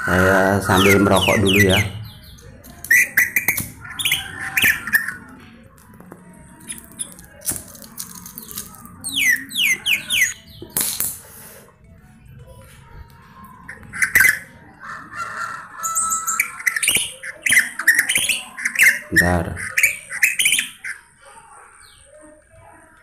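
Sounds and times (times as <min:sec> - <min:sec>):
bird chirping: 0:00.0 - 0:05.4, 0:06.5 - 0:11.0, 0:13.6 - 0:22.2.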